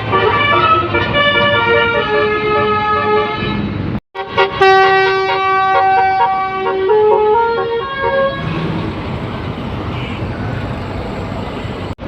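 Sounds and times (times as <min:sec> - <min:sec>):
multi-tone musical bus horn: 0:00.0 - 0:08.7
bus engine rumble: 0:00.0 - 0:12.0.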